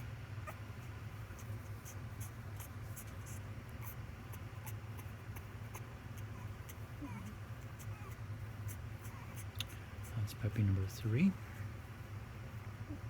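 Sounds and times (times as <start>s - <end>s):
steady low hum: 0.0s - 13.0s
puppy being handled scratching: 0.5s - 10.7s.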